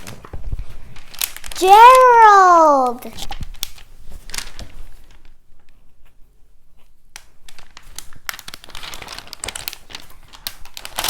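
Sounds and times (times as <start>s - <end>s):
paper page rustling and crinkling: 7.6s - 11.0s.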